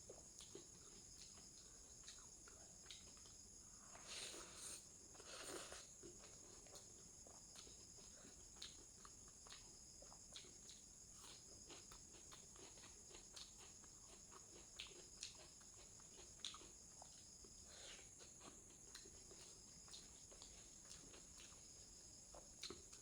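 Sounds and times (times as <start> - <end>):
chewing sounds: 0.1 - 23.0
faint hiss: 3.8 - 6.0.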